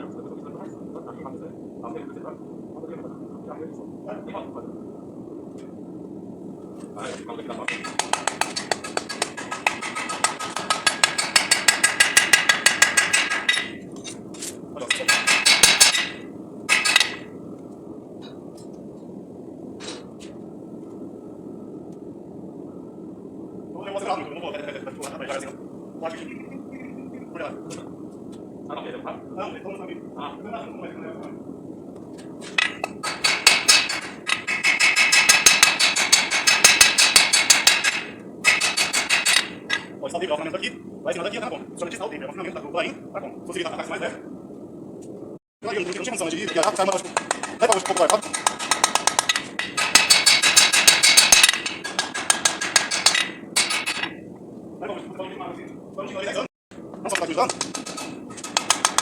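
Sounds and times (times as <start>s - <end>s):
hammer striking steel on anvil: 7.7s - 13.8s, 14.9s - 17.3s, 32.6s - 39.9s, 47.1s - 54.2s.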